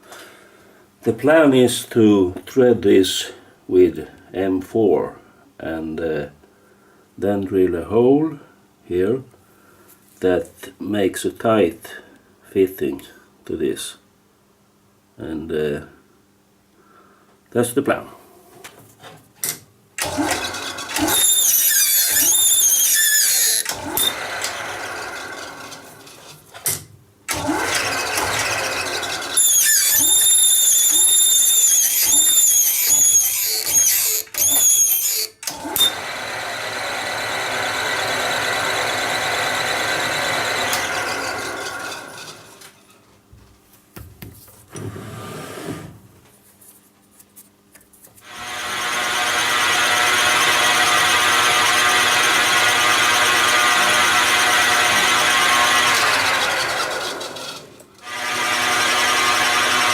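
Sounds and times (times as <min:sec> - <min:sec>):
cutting tool squealing: 0:20.0 - 0:24.5, 0:27.5 - 0:36.1, 0:39.5 - 0:43.0
metal lathe cutting: 0:20.0 - 0:25.8, 0:27.3 - 0:42.6, 0:48.3 - 0:59.9.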